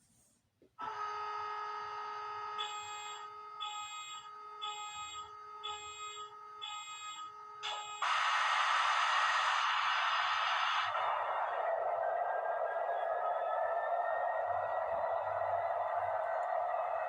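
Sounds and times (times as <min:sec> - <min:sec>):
loud hiss: 0:08.0 - 0:11.4.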